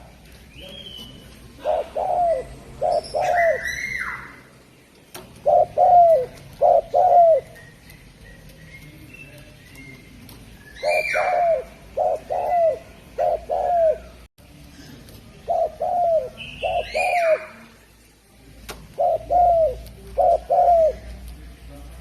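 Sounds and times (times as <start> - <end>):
dove cooing: 1.0 - 4.5, 5.3 - 8.5, 10.7 - 14.3, 15.3 - 17.7, 18.9 - 21.3.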